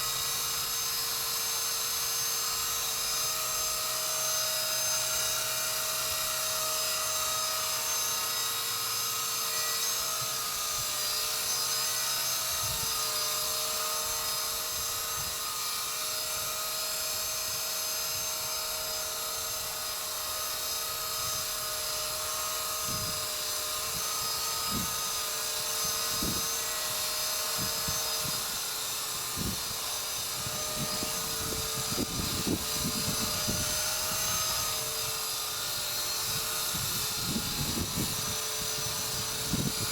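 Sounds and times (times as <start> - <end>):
toy helicopter motor whine: 0.0 - 39.9
wind buffeting microphone: 12.5 - 12.9, 22.7 - 25.1, 25.9 - 26.9, 27.5 - 28.6, 29.3 - 39.9.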